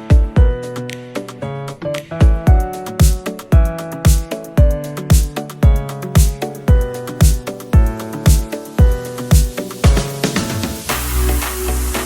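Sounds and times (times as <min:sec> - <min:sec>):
electronic dance music: 0:00.0 - 0:12.0
hiss: 0:07.1 - 0:12.0.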